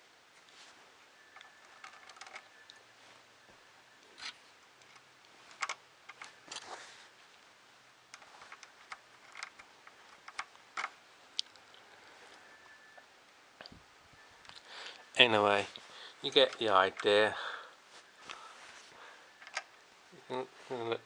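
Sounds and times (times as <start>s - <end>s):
plastic parts clicking: 1.4s - 2.5s, 8.1s - 10.9s, 19.4s - 19.7s.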